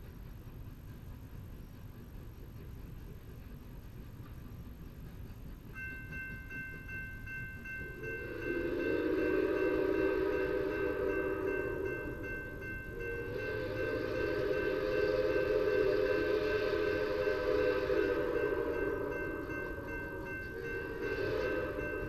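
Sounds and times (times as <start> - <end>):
steam whistle blasts: 8.0 - 22.0.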